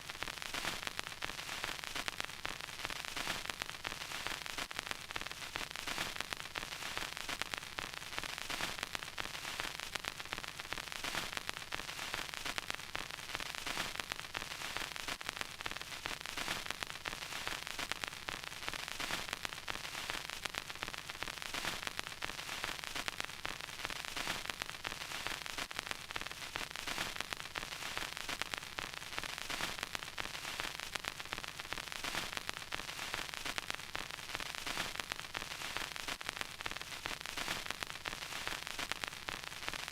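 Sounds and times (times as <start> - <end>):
vinyl record crackle: 0.0 - 39.9.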